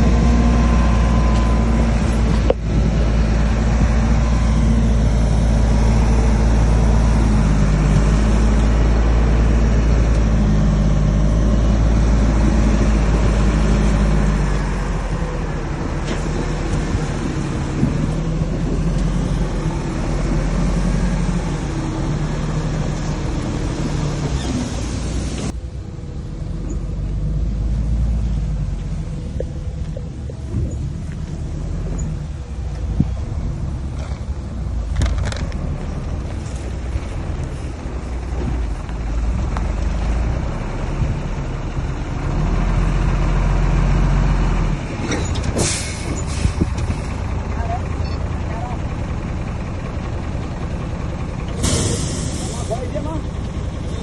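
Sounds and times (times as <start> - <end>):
heavy diesel machinery droning: 0.0 - 54.0
short sharp hiss: 51.6 - 52.6.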